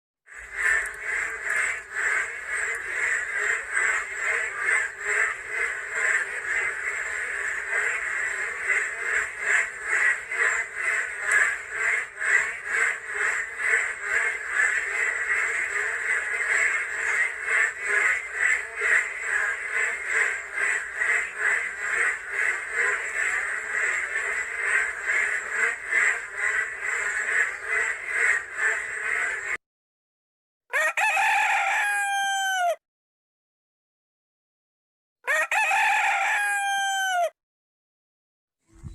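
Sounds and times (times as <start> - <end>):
frogs croaking: 0.3 - 29.6.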